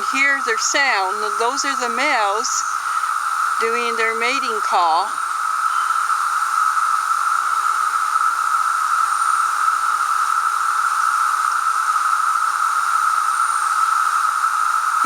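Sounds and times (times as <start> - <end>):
cicadas droning: 0.0 - 15.0.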